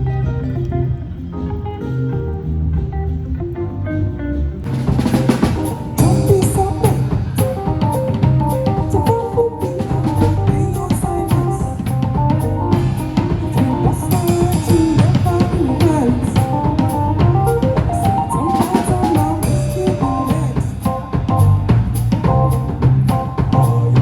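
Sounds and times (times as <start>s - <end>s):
live band playing: 0.0s - 24.0s
drum kit beat: 4.6s - 24.0s.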